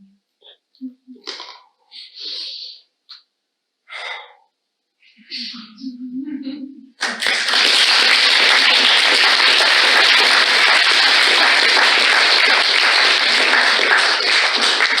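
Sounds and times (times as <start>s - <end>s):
audience applauding: 7.0s - 15.0s.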